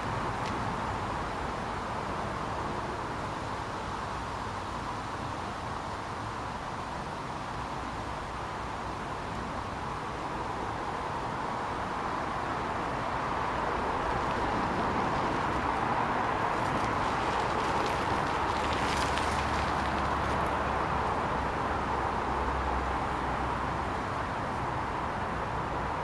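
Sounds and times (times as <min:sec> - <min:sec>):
outdoor hiss-like rush: 0:00.0 - 0:26.0
faint light ticks and rustles: 0:00.3 - 0:00.7, 0:16.5 - 0:20.6.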